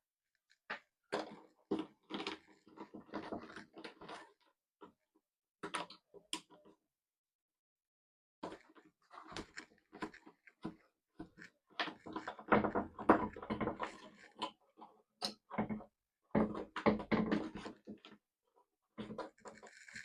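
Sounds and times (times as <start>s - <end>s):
wiring handling clicks and scrapes: 0.3s - 5.0s, 8.4s - 18.2s, 19.0s - 20.0s.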